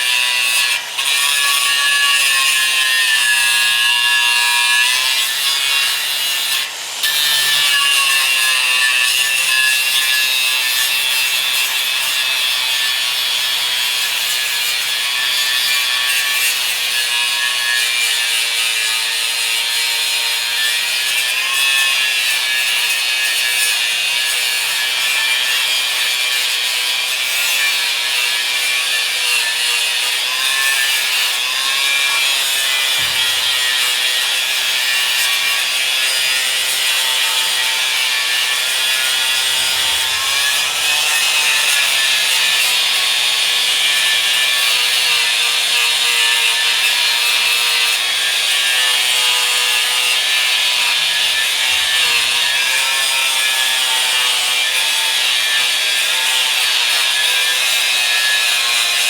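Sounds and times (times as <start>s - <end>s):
power tool whining: 29.9s - 52.7s.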